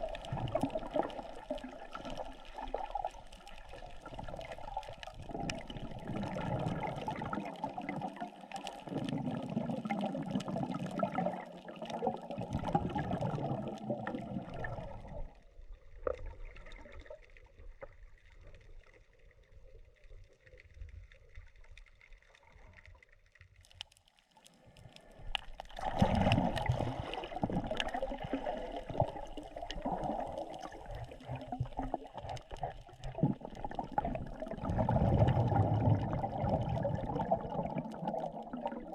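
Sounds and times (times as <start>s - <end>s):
water gurgling and sloshing: 0.0s - 38.9s
faint clicks: 20.1s - 25.8s.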